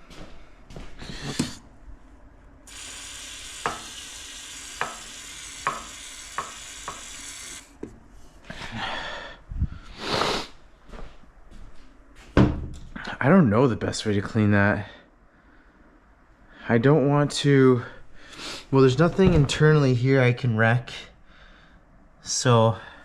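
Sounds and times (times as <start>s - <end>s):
aerosol can spraying hiss: 2.7s - 7.6s.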